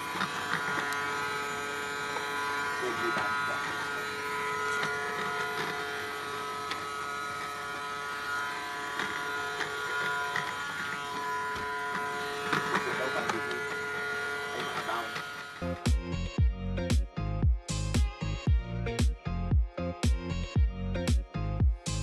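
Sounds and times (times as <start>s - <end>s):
small electric motor buzzing: 0.0s - 22.0s.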